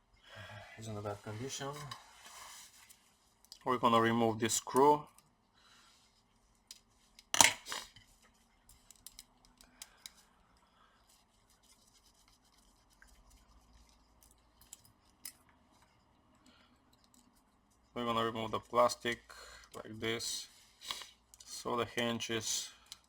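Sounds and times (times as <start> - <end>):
screwdriver clicks and scrapes: 8.7 - 10.2.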